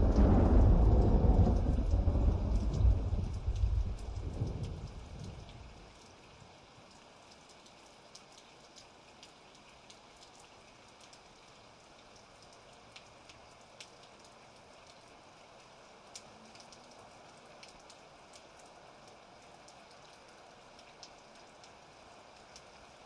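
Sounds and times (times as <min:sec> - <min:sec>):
thunder rumbling: 0:00.0 - 0:05.8
light rain with drips: 0:00.0 - 0:23.0.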